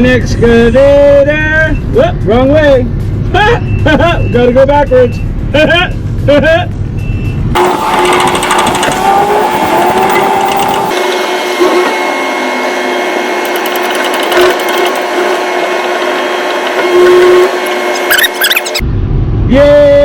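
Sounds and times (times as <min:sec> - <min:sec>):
small motor whining: 0:07.6 - 0:18.8
brief louder tone: 0:08.0 - 0:13.0.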